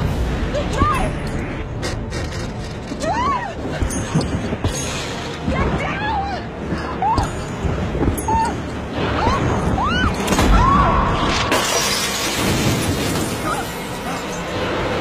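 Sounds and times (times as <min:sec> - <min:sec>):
tense dramatic music: 0:00.0 - 0:15.0
crashes and shattering effects: 0:09.1 - 0:15.0.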